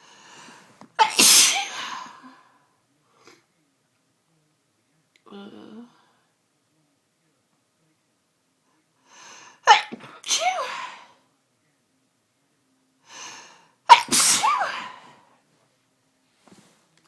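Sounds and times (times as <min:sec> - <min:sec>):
woman sneezing: 0:01.0 - 0:02.4, 0:09.6 - 0:11.2, 0:13.9 - 0:15.2.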